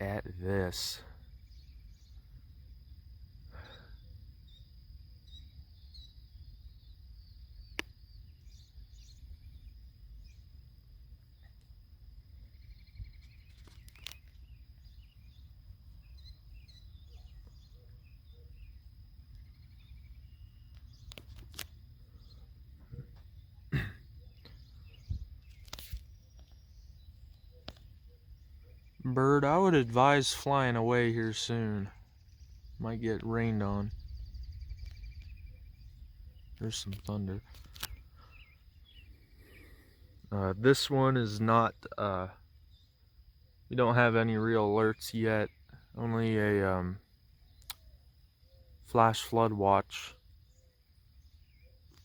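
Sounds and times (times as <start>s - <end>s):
bird chirps: 0.0s - 52.0s
wind rumbling on microphone: 24.3s - 29.0s, 31.9s - 39.6s.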